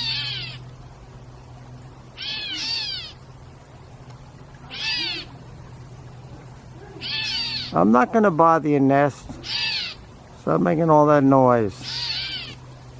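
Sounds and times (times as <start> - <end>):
catbird mew calls: 0.0 - 0.6, 2.2 - 3.2, 4.7 - 5.4, 7.0 - 7.8, 9.4 - 10.0, 11.8 - 12.6.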